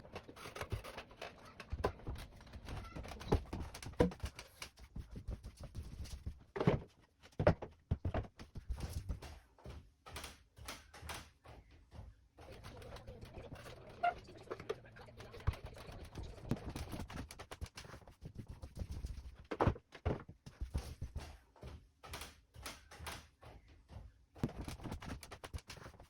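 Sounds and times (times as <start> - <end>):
knocks and footfalls: 1.7 - 10.0, 18.4 - 22.0.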